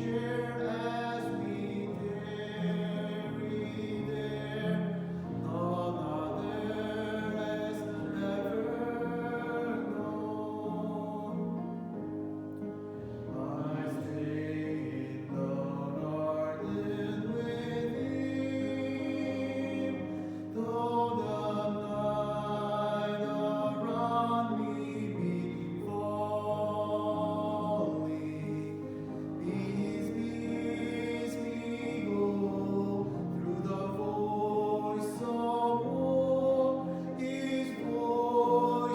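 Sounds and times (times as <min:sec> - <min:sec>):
slow church music with singing: 0:00.0 - 0:38.9.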